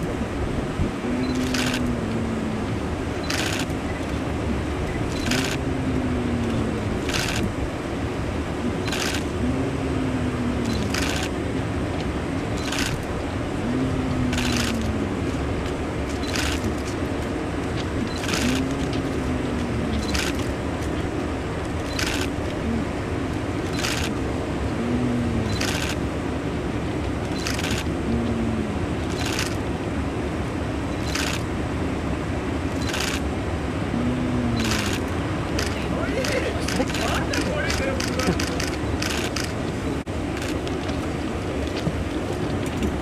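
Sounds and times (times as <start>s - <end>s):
steady machine hum: 0.0s - 43.0s
sharp clicks: 14.1s - 15.0s.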